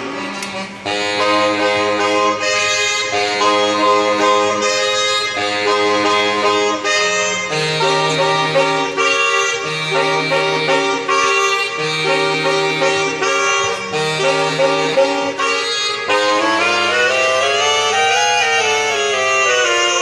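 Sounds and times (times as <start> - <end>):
saxophone quartet playing chords: 0.0 - 20.0.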